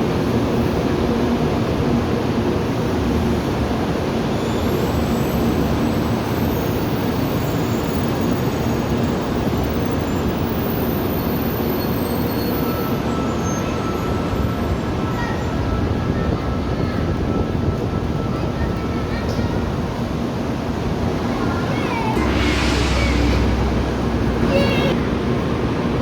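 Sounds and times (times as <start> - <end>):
train rumbling: 12.9 - 26.0
faint high squeal: 21.6 - 25.0.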